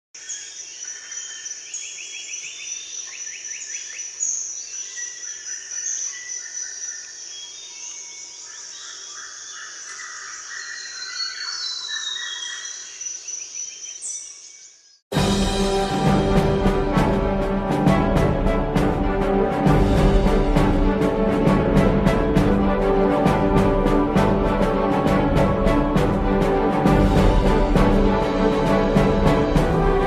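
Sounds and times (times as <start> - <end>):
birds chirping and trilling: 0.2 - 15.6.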